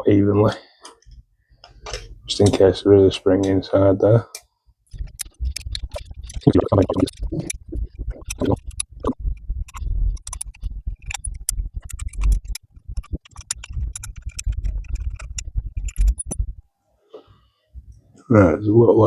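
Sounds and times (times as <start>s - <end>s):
spanner metallic clicks: 4.4s - 16.4s.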